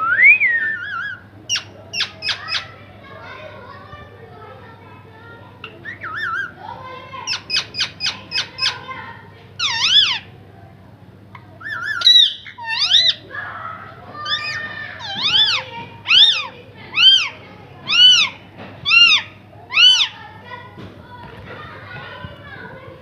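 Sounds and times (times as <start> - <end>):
parrot whistled squawks: 0.1 - 2.6, 9.6 - 10.2, 11.6 - 13.2, 14.3 - 17.3
parrot chirping: 0.8 - 2.7, 5.6 - 6.6, 7.2 - 8.9, 9.6 - 10.3, 11.6 - 13.3, 14.2 - 20.2.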